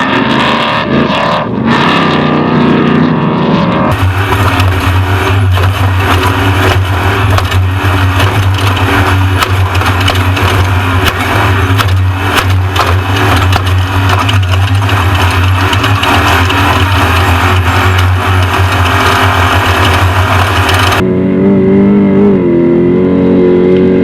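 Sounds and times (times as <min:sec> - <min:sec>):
truck engine drone: 0:00.0 - 0:24.0
truck rattling: 0:03.9 - 0:21.0.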